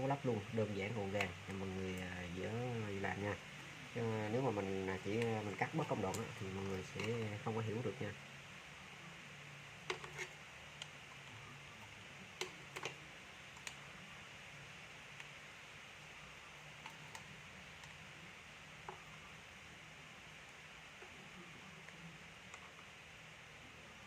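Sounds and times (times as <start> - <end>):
faint steady hum: 0.0 - 24.0
small parts and tools clicking: 9.8 - 11.4, 12.4 - 13.8, 16.8 - 18.0.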